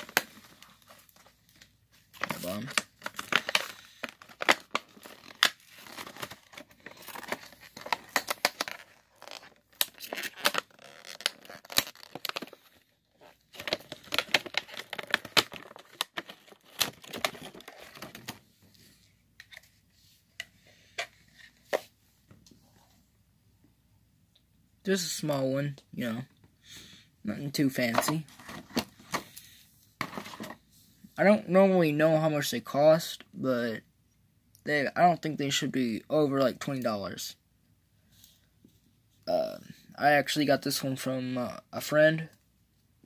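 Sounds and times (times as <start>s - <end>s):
packaging crinkling and tearing: 0.0s - 18.4s.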